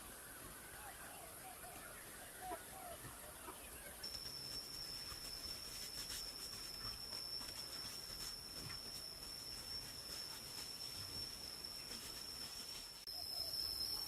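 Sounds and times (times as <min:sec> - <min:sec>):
high-pitched insect whine: 0:04.0 - 0:14.0.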